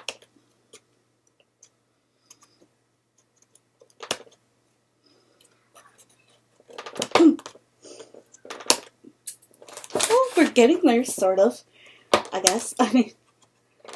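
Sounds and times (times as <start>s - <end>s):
plastic packaging handling: 9.6s - 11.2s.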